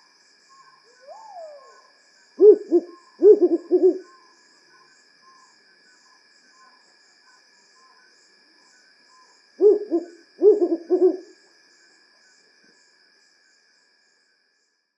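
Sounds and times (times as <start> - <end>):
owl hooting: 0.9 - 4.2, 9.6 - 11.3.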